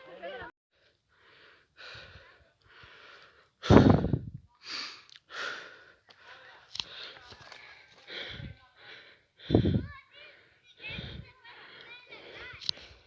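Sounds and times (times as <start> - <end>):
person panting: 0.8 - 13.0.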